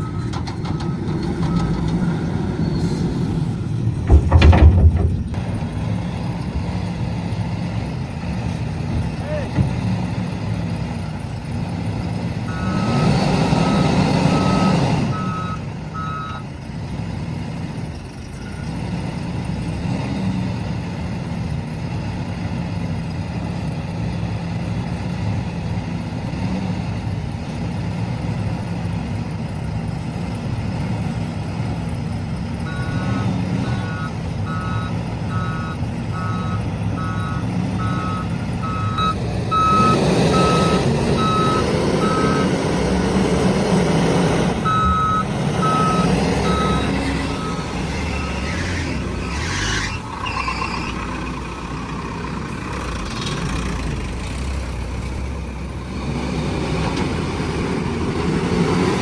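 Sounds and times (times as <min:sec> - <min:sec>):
diesel engine running: 0:00.0 - 0:59.0
reversing alarm beeping: 0:12.5 - 0:16.4, 0:32.6 - 0:42.5, 0:44.6 - 0:48.6.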